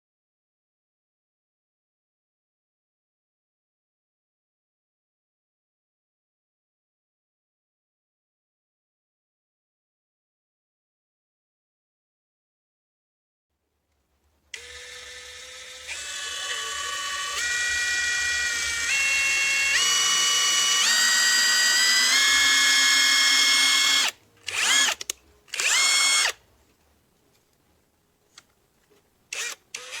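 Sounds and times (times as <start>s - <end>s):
impact driver motor whining: 14.6s - 25.0s, 25.6s - 26.4s.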